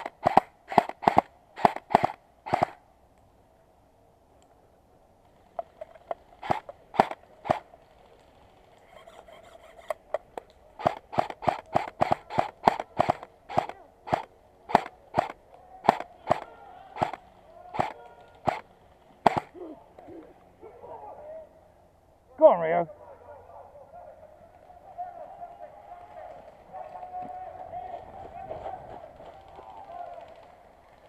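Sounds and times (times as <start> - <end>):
airsoft gun shots: 0.0 - 2.8, 6.4 - 7.6, 10.8 - 17.2, 17.8 - 18.6, 19.2 - 19.6.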